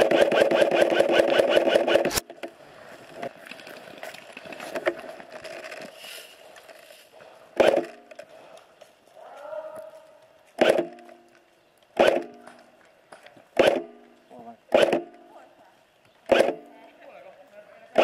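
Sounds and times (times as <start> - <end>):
gearbox motor whir: 0.0 - 2.2
airsoft gun rattle of shots: 0.0 - 2.5, 7.6 - 8.3, 10.6 - 15.2, 16.2 - 16.7.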